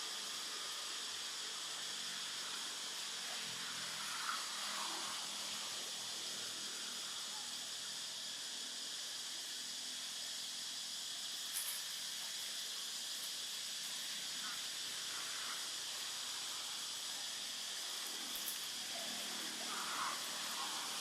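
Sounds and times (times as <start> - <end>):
high outdoor hiss: 0.0 - 21.0.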